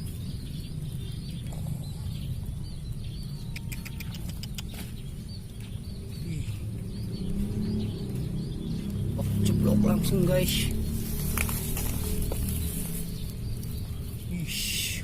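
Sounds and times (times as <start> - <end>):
small birds chirping: 0.0 - 15.0
steady low rumble: 4.4 - 14.5.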